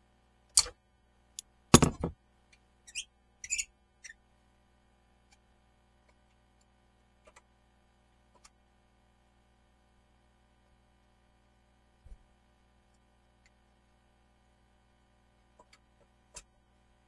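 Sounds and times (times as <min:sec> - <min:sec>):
tools clicking and knocking: 0:01.8 - 0:02.1.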